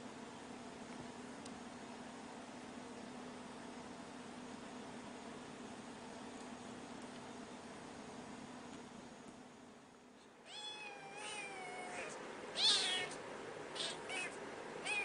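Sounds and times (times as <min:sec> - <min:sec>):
cat meowing: 0:10.5 - 0:15.0.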